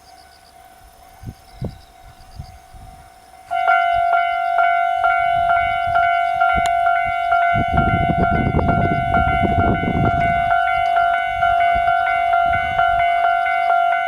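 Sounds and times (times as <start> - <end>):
level-crossing warning bell: 0.0 - 14.0.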